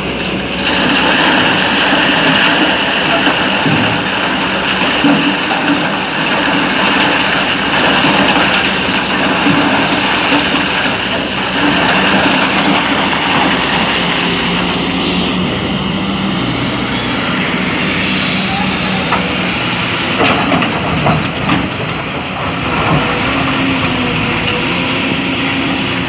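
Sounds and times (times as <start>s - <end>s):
diesel engine running: 0.0s - 26.0s
rushing noise: 8.9s - 21.2s.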